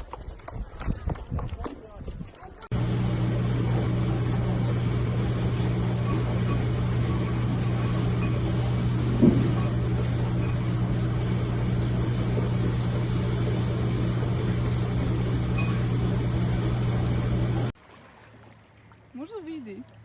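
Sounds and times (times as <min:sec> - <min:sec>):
mechanical hum with rushing noise: 0:02.7 - 0:17.8.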